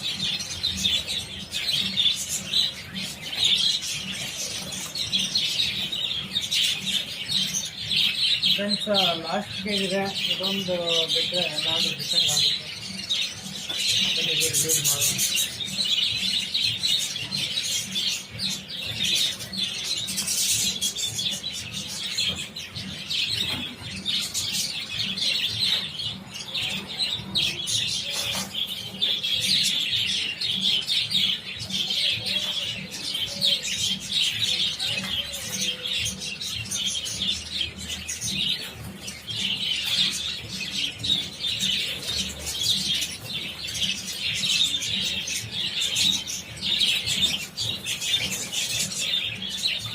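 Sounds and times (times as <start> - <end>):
budgerigars chattering and chirping: 0.0 - 49.9.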